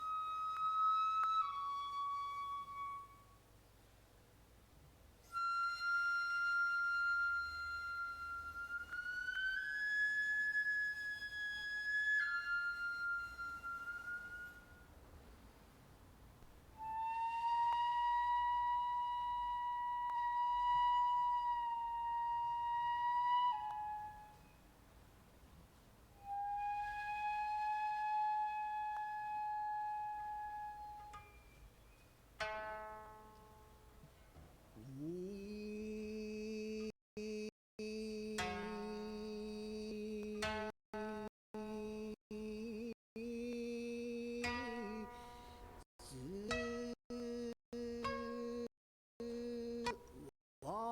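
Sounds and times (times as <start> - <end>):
wind instrument long held notes: 0.0 - 3.4, 5.2 - 14.9, 16.8 - 24.6, 26.2 - 31.2
koto string pluck: 32.4 - 34.5.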